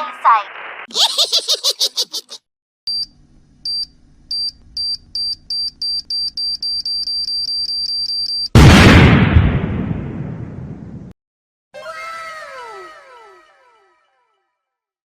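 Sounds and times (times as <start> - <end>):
electronic countdown beeps: 3.7 - 8.5.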